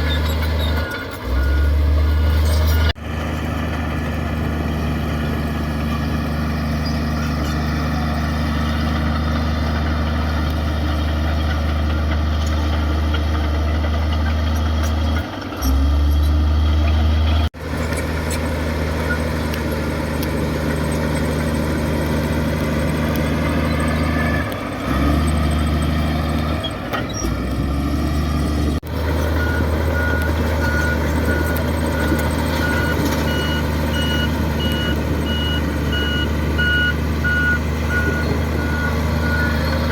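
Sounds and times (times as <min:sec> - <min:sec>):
diesel earthmover engine running: 0:00.0 - 0:39.9
reversing alarm beeping: 0:00.2 - 0:02.9, 0:29.4 - 0:39.9.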